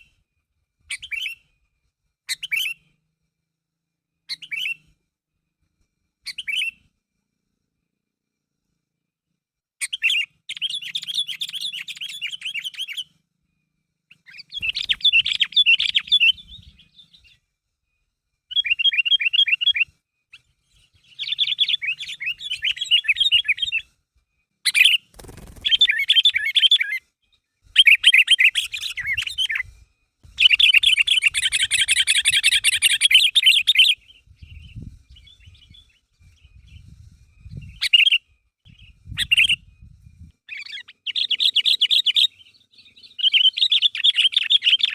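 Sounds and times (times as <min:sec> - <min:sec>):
bird singing rapid chattering phrases: 0:09.8 - 0:13.0, 0:14.3 - 0:17.3, 0:21.0 - 0:23.8, 0:24.7 - 0:27.0, 0:27.8 - 0:29.6, 0:30.4 - 0:36.9, 0:37.5 - 0:39.6, 0:40.5 - 0:44.9.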